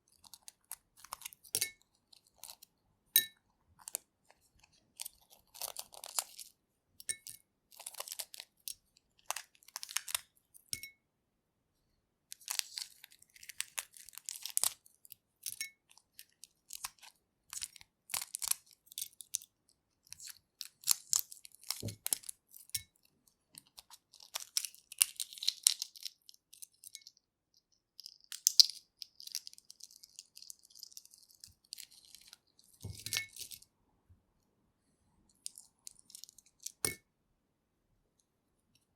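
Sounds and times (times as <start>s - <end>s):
egg shell crackling while peeled: 4.9s - 6.6s, 7.2s - 10.3s, 12.4s - 19.5s, 20.1s - 32.4s.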